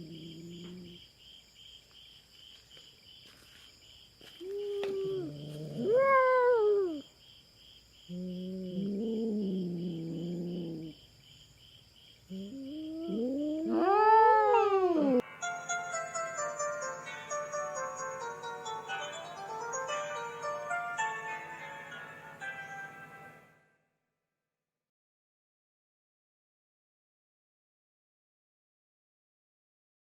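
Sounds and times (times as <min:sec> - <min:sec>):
crickets chirping: 0:00.0 - 0:23.5
cats yowling: 0:04.4 - 0:07.0, 0:08.1 - 0:10.9, 0:12.3 - 0:15.2.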